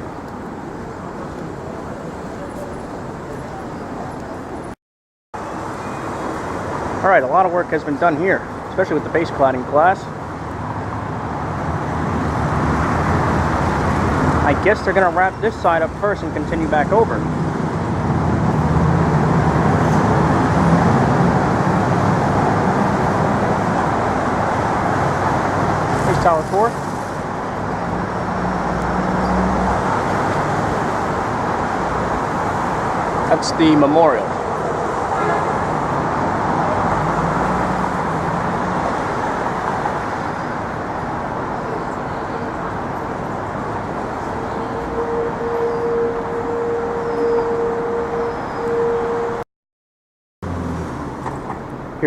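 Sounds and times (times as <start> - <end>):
street traffic rumble: 0.0 - 4.8, 5.4 - 49.4, 50.4 - 52.0
thin high tone: 44.1 - 49.4.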